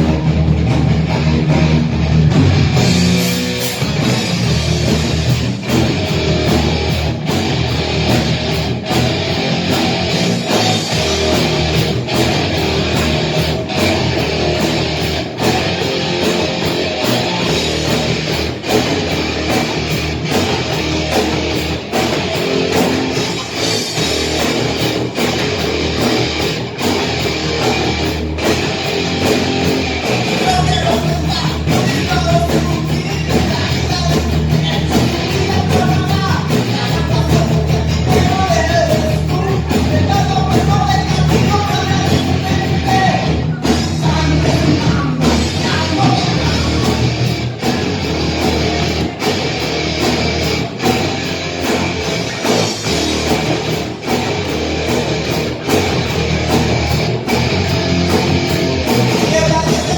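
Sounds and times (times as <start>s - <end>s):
heavy rock band playing: 0.0s - 59.9s
person singing: 30.3s - 47.0s, 59.1s - 59.9s.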